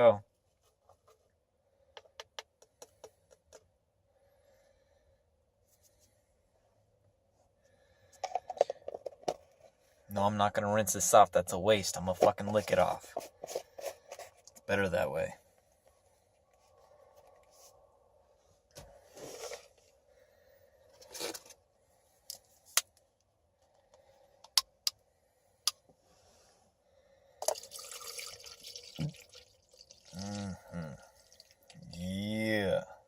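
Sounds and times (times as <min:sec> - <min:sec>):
water pouring into cup: 0:27.4 - 0:31.9.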